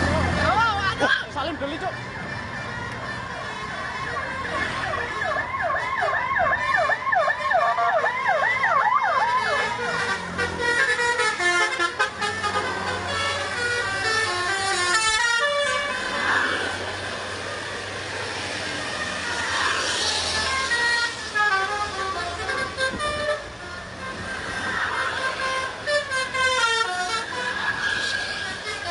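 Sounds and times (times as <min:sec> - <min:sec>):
bus musical horn: 0:05.8 - 0:08.2, 0:09.2 - 0:16.2, 0:20.2 - 0:28.9.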